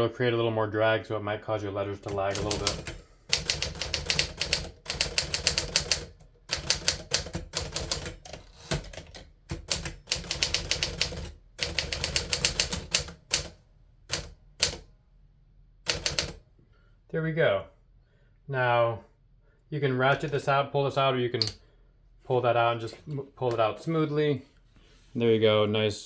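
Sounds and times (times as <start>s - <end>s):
manual typewriter typing: 2.0s - 14.8s, 15.9s - 16.4s.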